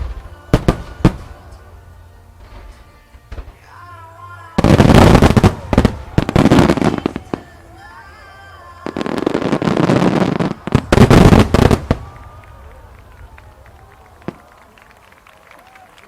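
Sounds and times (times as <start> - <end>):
fireworks bursting and crackling: 0.0 - 1.7, 4.6 - 15.8.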